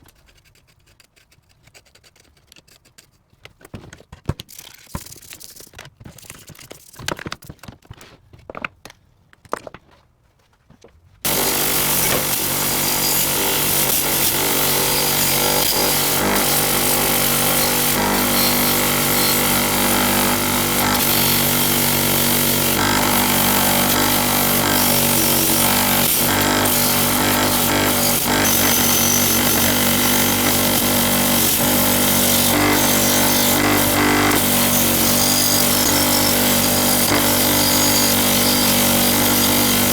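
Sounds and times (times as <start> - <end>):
power tool motor running: 11.3 - 39.9.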